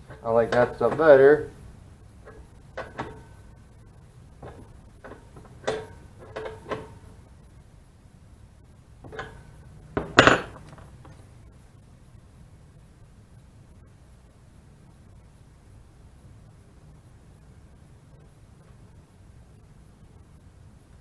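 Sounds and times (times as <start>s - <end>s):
metal fittings clatter: 0.0s - 3.5s, 4.4s - 7.2s, 9.1s - 11.2s
small metal fittings clinking: 0.0s - 3.5s, 4.4s - 7.2s, 9.1s - 11.2s.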